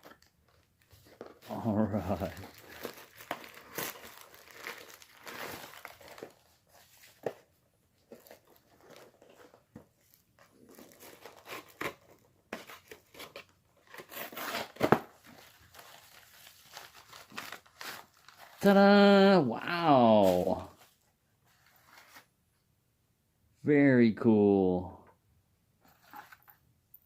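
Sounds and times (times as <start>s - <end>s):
packaging crinkling and tearing: 0.0s - 7.4s, 8.0s - 18.7s.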